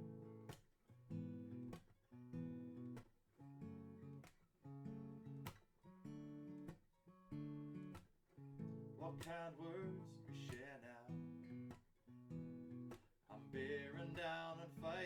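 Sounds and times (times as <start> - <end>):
acoustic guitar strumming chords: 8.4 - 15.0.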